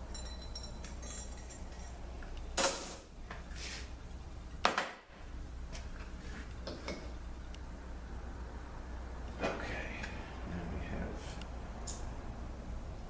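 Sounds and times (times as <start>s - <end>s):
low steady hum: 0.0s - 13.0s
steel parts clinking and clattering: 0.1s - 2.0s.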